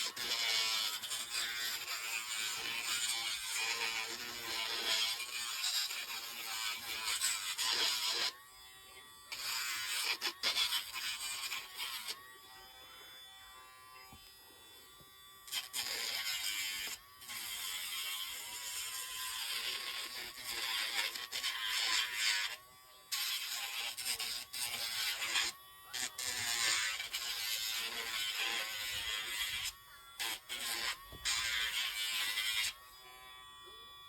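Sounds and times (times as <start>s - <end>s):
sanding drum rasping on nails: 0.0s - 8.4s, 9.3s - 12.2s, 23.1s - 32.8s
nail grinder motor whine: 0.0s - 34.0s.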